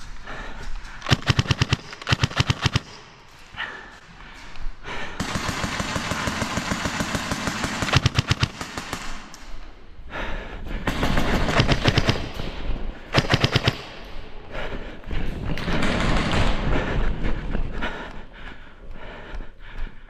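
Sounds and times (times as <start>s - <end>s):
airsoft gun bursts: 1.0s - 3.2s, 5.2s - 9.3s.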